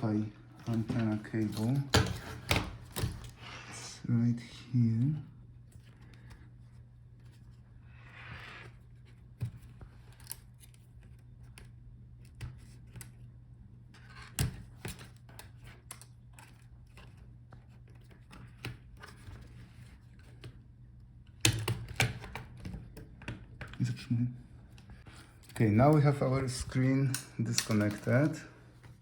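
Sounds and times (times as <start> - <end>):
light clicks and scraping: 24.7 - 29.0.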